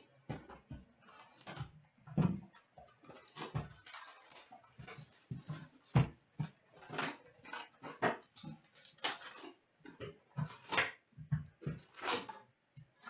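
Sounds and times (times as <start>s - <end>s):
plastic wrap crinkling and tearing: 11.8s - 12.3s.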